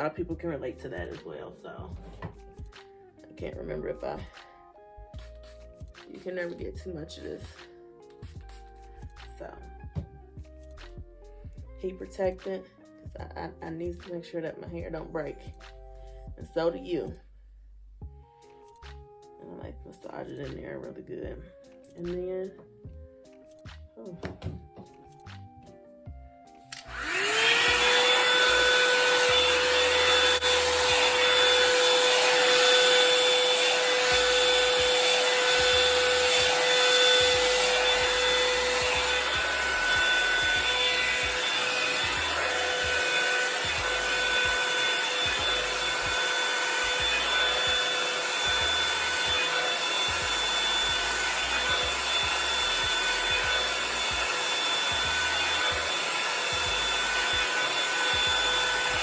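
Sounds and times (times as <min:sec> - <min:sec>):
hair dryer brush blowing: 0:05.5 - 0:07.6, 0:26.7 - 0:59.0.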